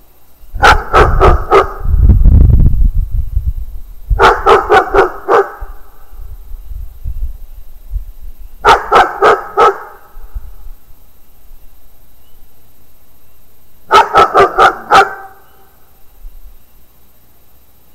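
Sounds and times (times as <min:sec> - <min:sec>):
dog barking: 0:00.6 - 0:01.9, 0:04.2 - 0:05.8, 0:08.6 - 0:10.1, 0:13.9 - 0:15.5.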